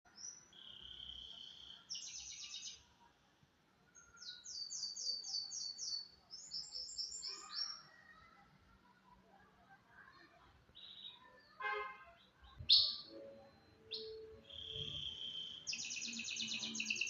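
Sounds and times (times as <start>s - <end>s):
canary singing: 12.2s - 17.0s.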